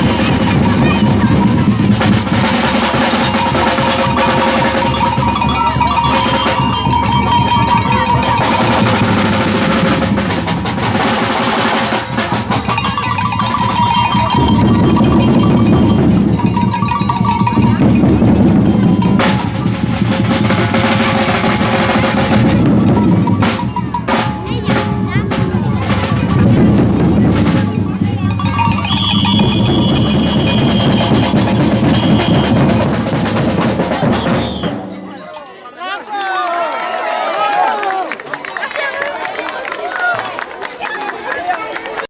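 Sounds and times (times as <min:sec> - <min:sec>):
samba drums playing: 0:00.0 - 0:35.2
held tone: 0:03.1 - 0:09.2, 0:12.5 - 0:19.5, 0:28.2 - 0:32.9.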